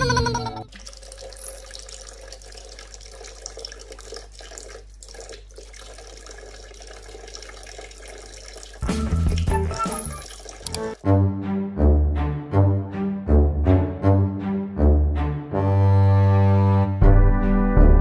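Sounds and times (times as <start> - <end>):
running water: 0.0 - 11.0
music: 8.8 - 18.0.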